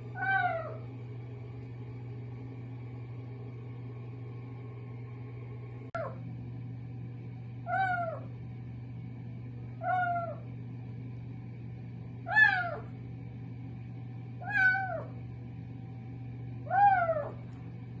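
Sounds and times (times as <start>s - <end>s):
steady low hum: 0.0s - 18.0s
kitten meowing: 14.4s - 15.1s.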